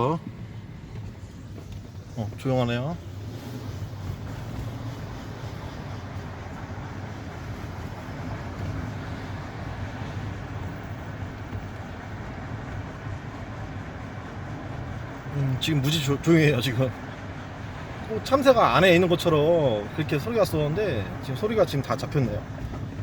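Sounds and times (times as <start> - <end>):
car road noise from inside: 0.0 - 23.0.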